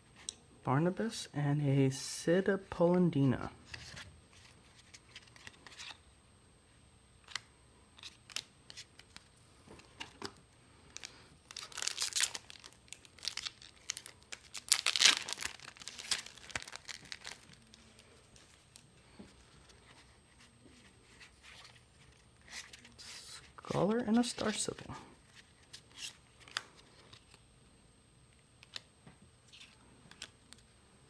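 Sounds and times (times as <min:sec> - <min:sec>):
wrapper tearing and crinkling: 0:10.9 - 0:18.8.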